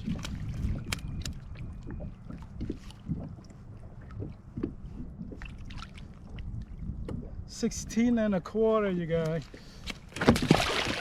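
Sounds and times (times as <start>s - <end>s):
water sloshing against boat hull: 0.0s - 7.8s, 9.1s - 11.0s
steady low rumble: 0.0s - 8.7s.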